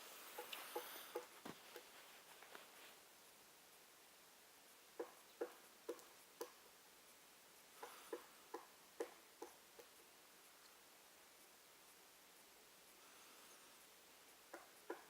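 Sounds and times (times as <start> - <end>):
woodpecker pecking at wood: 0.3 - 1.9, 14.5 - 15.0.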